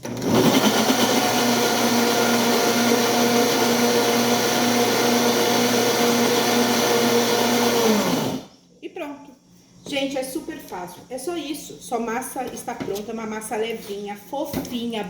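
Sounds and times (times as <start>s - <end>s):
kitchen blender running: 0.0s - 8.5s.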